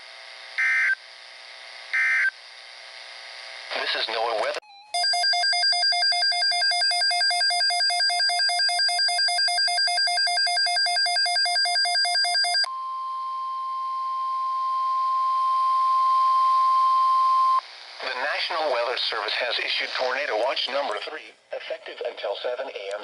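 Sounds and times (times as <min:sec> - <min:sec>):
steady single-pitch alarm tone: 0:00.6 - 0:01.0, 0:01.9 - 0:02.4, 0:04.6 - 0:17.6
warbling electronic alarm: 0:00.6 - 0:01.0, 0:02.0 - 0:02.3, 0:04.6 - 0:17.6.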